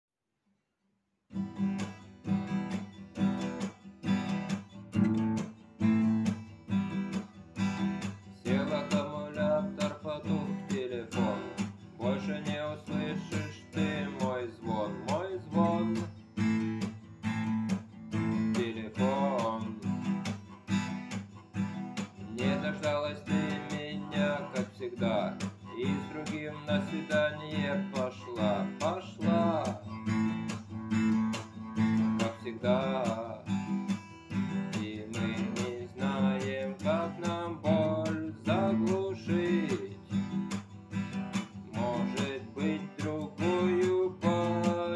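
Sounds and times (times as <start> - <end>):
acoustic guitar strumming: 1.3 - 44.9
person singing: 8.4 - 16.2, 18.3 - 20.0, 22.2 - 30.3, 31.8 - 33.5, 34.6 - 40.3, 41.6 - 44.9.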